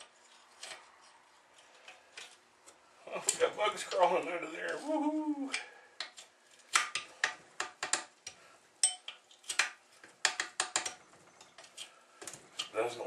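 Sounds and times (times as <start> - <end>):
metal parts clinking and clacking: 7.8 - 12.8.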